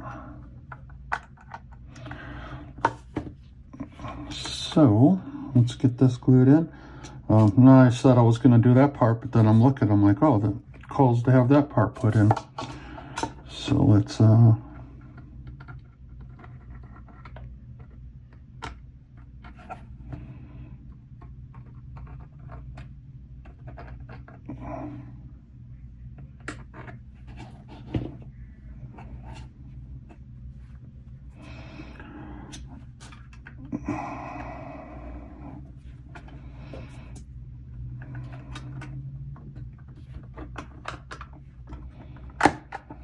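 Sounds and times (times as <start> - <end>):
steady low hum: 0.0 - 43.0
plastic parts clicking and tapping: 38.0 - 43.0.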